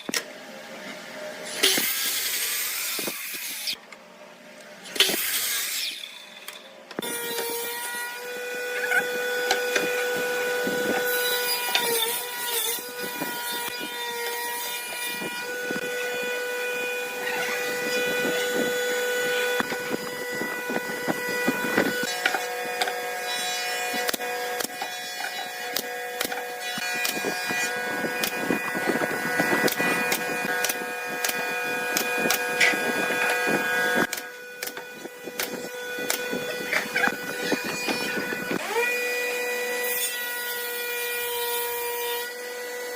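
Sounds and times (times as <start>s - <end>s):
power tool whining: 4.8s - 42.9s.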